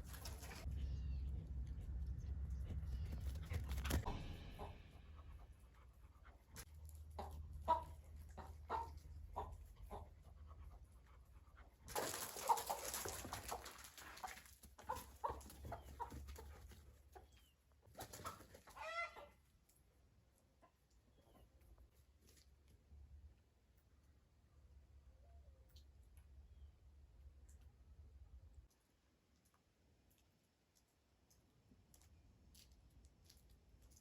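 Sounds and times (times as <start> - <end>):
chicken clucking and squawking: 3.4 - 5.0, 7.0 - 10.9, 11.9 - 19.4.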